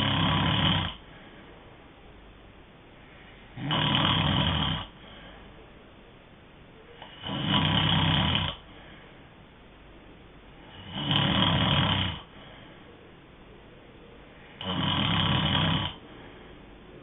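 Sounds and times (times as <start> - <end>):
person snoring: 0.0 - 1.0, 3.5 - 5.0, 7.0 - 8.7, 10.6 - 12.3, 14.6 - 16.2.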